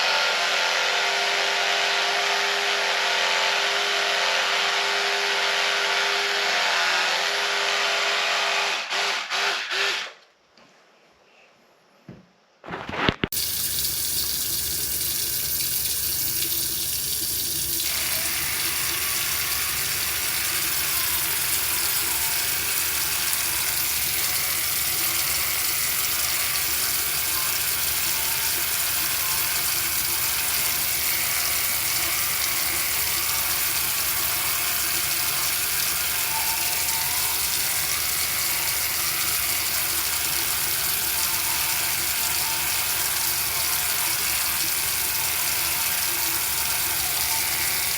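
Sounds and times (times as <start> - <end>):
electric toothbrush motor buzzing: 13.5 - 47.9.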